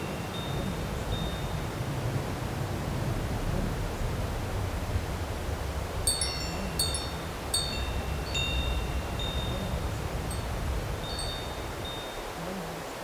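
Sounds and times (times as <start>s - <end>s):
wind chimes tinkling: 0.0s - 1.6s, 6.0s - 12.4s.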